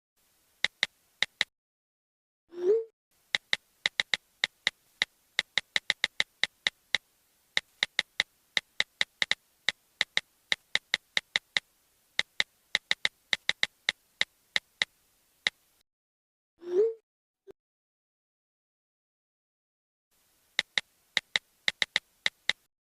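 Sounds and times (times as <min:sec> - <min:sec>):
phone keyboard typing clicks: 0:00.6 - 0:01.5, 0:03.3 - 0:07.0, 0:07.6 - 0:11.6, 0:12.2 - 0:14.9, 0:20.6 - 0:22.7.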